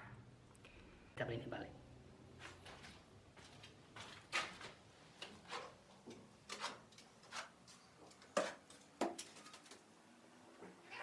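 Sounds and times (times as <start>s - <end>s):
short scrapes and knocks: 4.4s - 9.8s.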